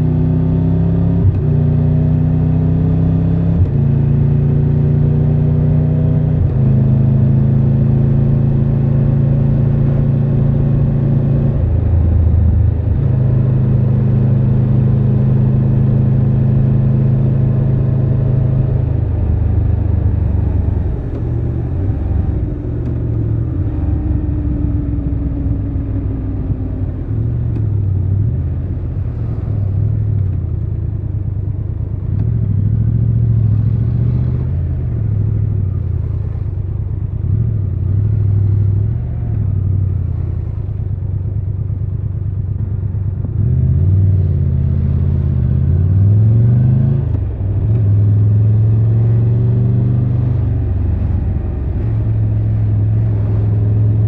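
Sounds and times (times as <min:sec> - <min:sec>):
motorcycle engine running: 0:10.9 - 0:45.7.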